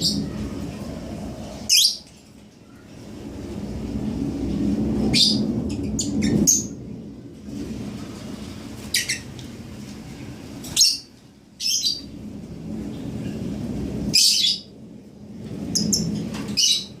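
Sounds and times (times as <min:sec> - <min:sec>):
steady low rumble: 0:00.0 - 0:17.0.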